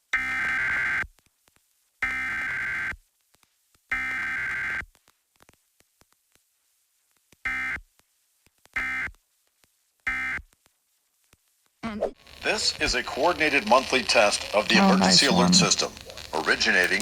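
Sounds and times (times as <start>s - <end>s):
buzzing two-tone data bursts: 12.2s - 17.0s.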